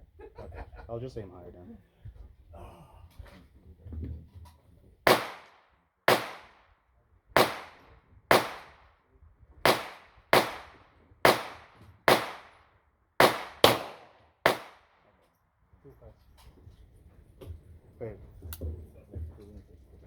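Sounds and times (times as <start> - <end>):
pistol shots echoing: 5.1 - 6.6, 7.4 - 8.8, 9.6 - 12.6, 13.2 - 14.9.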